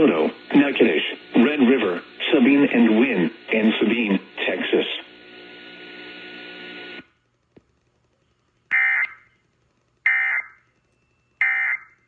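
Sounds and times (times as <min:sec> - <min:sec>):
radio buzzing hum: 0:00.0 - 0:10.7
shrill electronic data bursts: 0:10.1 - 0:12.0.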